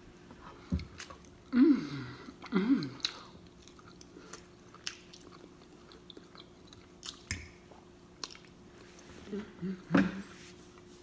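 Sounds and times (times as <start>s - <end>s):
faint steady hum: 0.0s - 11.0s
person chewing food: 0.6s - 1.6s, 2.2s - 9.1s.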